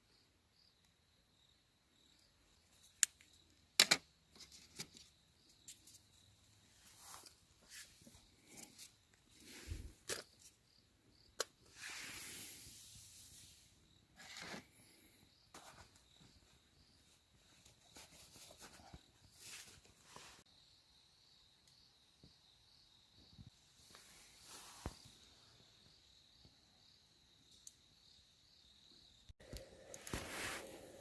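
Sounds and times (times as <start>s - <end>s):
rustling of camp gear: 4.3s - 10.6s, 11.6s - 20.4s, 23.8s - 25.3s, 29.4s - 31.0s
short hiss: 11.7s - 13.8s, 24.0s - 25.2s, 29.9s - 31.0s.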